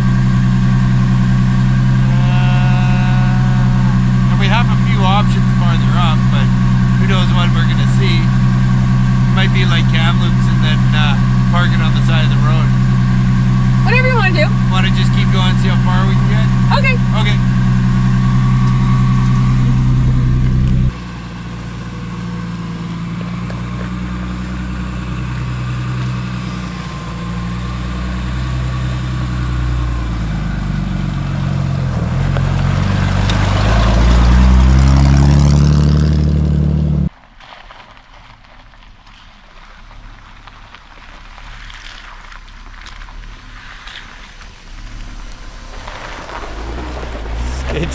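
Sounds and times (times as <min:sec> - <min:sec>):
steady drive hum: 0:00.0 - 0:21.0, 0:43.1 - 0:47.9
car engine accelerating: 0:00.0 - 0:37.1, 0:38.3 - 0:47.9.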